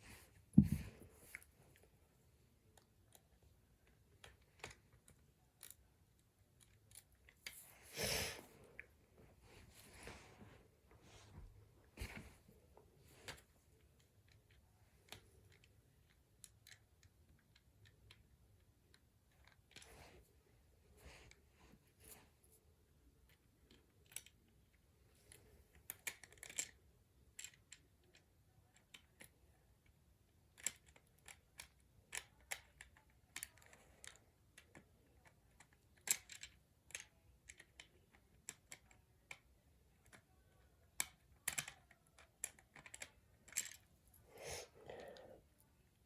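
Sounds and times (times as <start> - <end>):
soft handling noise: 0.0 - 15.8
plastic toy parts clicking: 40.9 - 43.9.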